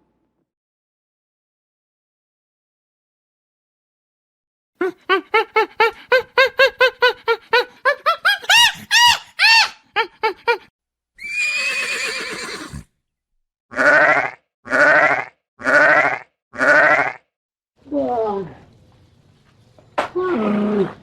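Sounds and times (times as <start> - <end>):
pitched animal calls: 4.8 - 10.6, 13.7 - 17.2
rising and falling animal cries: 4.9 - 10.6, 11.2 - 12.8
harsh rasping animal call: 13.7 - 17.2.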